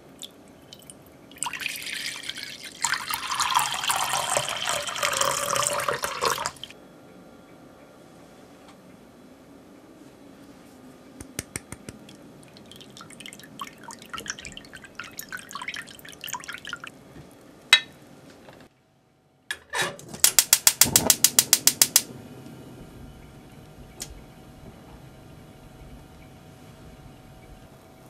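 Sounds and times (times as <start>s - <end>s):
bubbles crackling: 1.4s - 6.7s, 12.0s - 16.9s.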